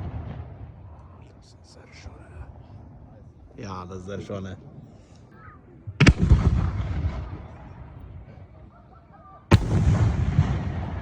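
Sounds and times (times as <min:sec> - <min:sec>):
firework bangs: 0:00.0 - 0:00.8, 0:06.0 - 0:07.6, 0:09.5 - 0:11.0
low rolling echo: 0:09.5 - 0:11.0.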